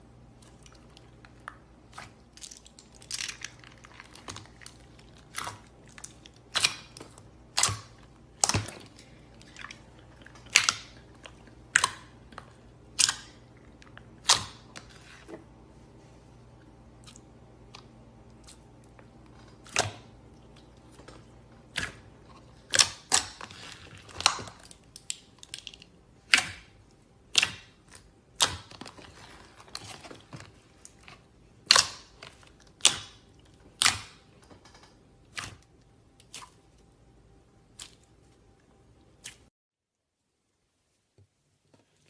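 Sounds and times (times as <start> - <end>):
slime clicking and popping: 31.6 - 33.2, 33.8 - 34.2.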